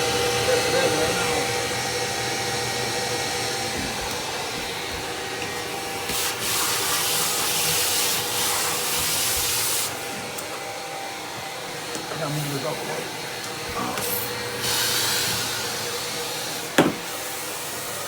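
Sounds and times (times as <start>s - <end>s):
vacuum cleaner running: 0.0s - 18.0s
rushing hiss of air: 5.7s - 10.2s, 14.1s - 18.0s.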